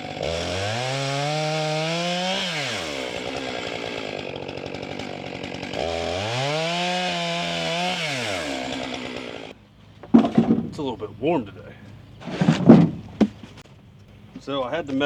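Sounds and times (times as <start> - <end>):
chainsaw idling and revving: 0.0 - 9.7.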